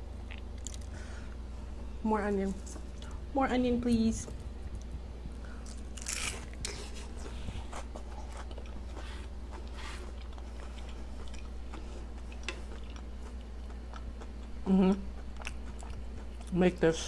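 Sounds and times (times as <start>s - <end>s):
crunchy chewing of burger: 4.4s - 16.6s.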